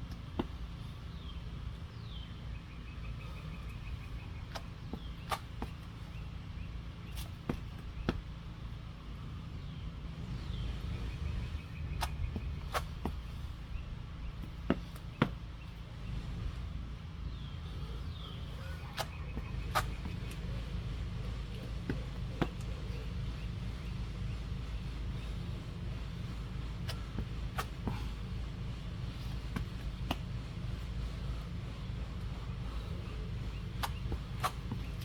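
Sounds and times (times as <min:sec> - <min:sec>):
steady low rumble: 0:00.0 - 0:35.0
bird singing: 0:01.0 - 0:08.8, 0:09.5 - 0:16.2, 0:17.2 - 0:27.2
hands and feet landing on ground: 0:21.5 - 0:23.0, 0:26.8 - 0:28.2, 0:32.7 - 0:35.0.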